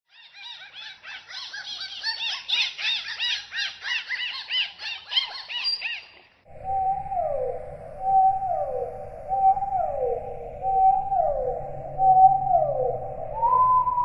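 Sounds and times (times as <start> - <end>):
dolphin whistling chirps: 5.6 - 14.0.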